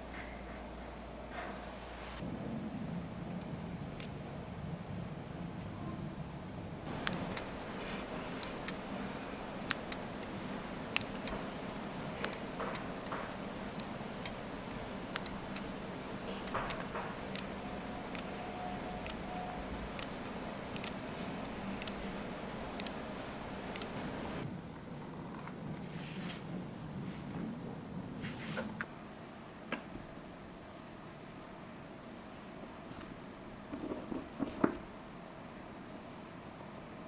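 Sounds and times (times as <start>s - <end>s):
steady low hum: 0.0s - 28.2s
metal tools clicking and tapping: 6.9s - 24.4s.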